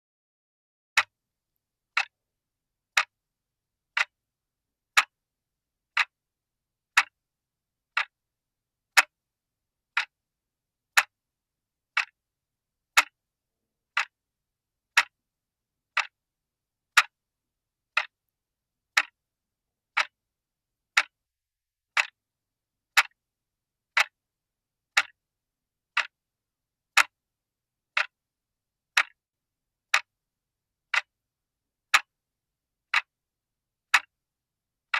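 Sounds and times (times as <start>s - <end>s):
clock ticking: 1.0s - 1.2s, 1.9s - 2.2s, 2.9s - 3.2s, 3.9s - 4.2s, 4.9s - 5.2s, 5.9s - 6.2s, 6.9s - 7.2s, 7.9s - 8.2s, 8.9s - 9.2s, 9.9s - 10.2s, 10.9s - 11.2s, 11.9s - 12.2s, 12.9s - 13.2s, 13.9s - 14.2s, 14.9s - 15.2s, 16.0s - 16.2s, 16.9s - 17.2s, 17.9s - 18.2s, 18.9s - 19.2s, 19.9s - 20.2s, 20.9s - 21.2s, 21.9s - 22.2s, 22.9s - 23.2s, 23.9s - 24.2s, 24.9s - 25.2s, 25.9s - 26.2s, 26.9s - 27.2s, 27.9s - 28.2s, 28.9s - 29.2s, 29.9s - 30.1s, 30.9s - 31.1s, 31.9s - 32.1s, 32.9s - 33.1s, 33.9s - 34.2s.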